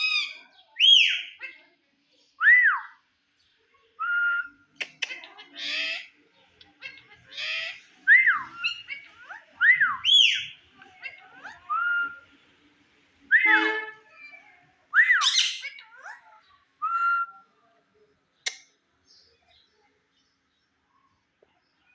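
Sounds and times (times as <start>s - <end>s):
parakeet squawking: 0.0s - 1.5s, 5.0s - 6.1s, 10.0s - 11.6s, 15.0s - 16.2s
parakeet whistling: 15.0s - 15.8s.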